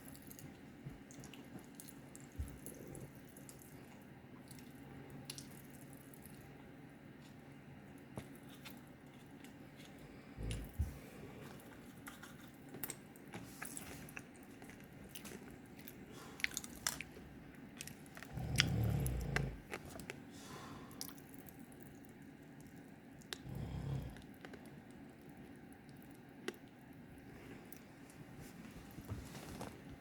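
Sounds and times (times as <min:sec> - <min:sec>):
clicking mouth noises: 0:17.8 - 0:20.2
man snoring: 0:18.3 - 0:19.6, 0:23.5 - 0:24.2.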